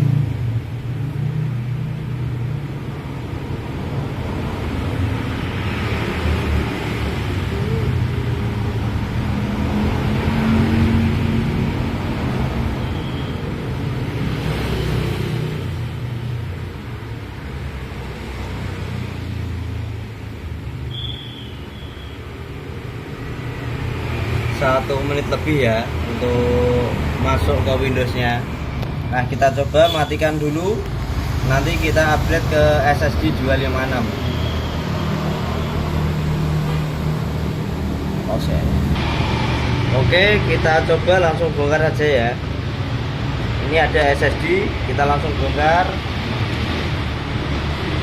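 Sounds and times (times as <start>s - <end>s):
road traffic rumble: 0.0s - 48.0s.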